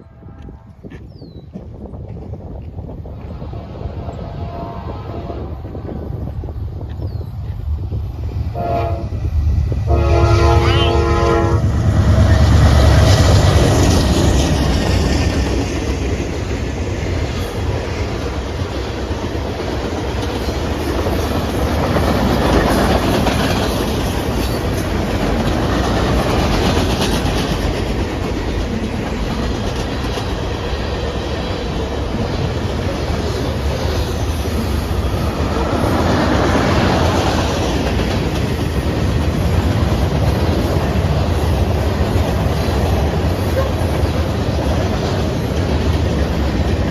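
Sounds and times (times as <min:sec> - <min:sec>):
locomotive horn blasts: 0:00.0 - 0:00.9, 0:04.1 - 0:05.6, 0:08.5 - 0:09.2, 0:09.8 - 0:12.4, 0:43.4 - 0:44.0
diesel locomotives passing: 0:00.0 - 0:46.9.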